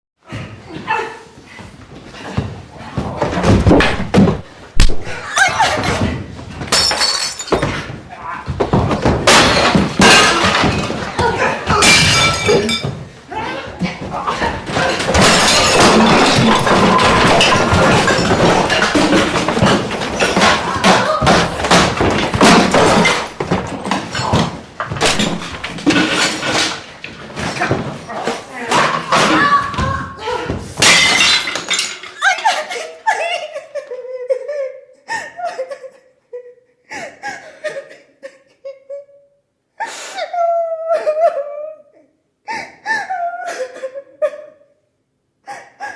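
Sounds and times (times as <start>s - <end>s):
crashing and breaking: 6.6s - 13.0s, 14.0s - 30.0s, 30.8s - 32.2s.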